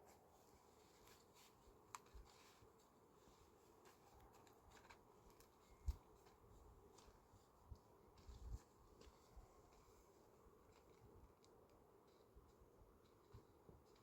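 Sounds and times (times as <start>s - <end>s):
faint ticks and clicks: 10.6s - 14.0s.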